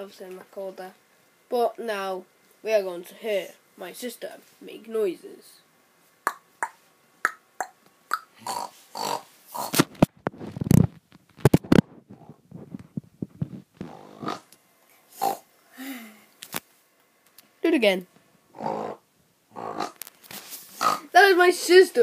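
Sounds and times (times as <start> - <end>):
girl snorting like a pig: 7.6 - 9.8, 13.8 - 14.5, 15.1 - 16.3, 18.5 - 20.0, 20.8 - 21.1.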